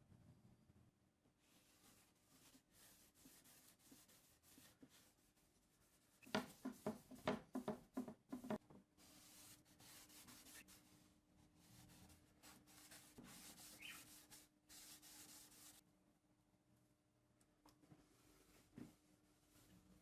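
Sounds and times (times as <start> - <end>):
hand rubbing strokes on wood: 1.5 - 11.0, 11.6 - 15.8.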